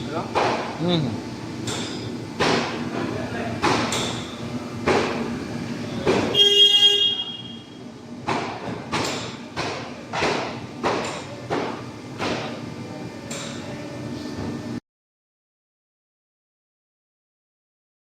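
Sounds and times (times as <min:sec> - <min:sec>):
sharp knocks: 0:00.3 - 0:00.7, 0:01.6 - 0:04.2, 0:04.8 - 0:05.2, 0:06.0 - 0:06.4, 0:08.2 - 0:12.6
vehicle horn: 0:06.3 - 0:07.8.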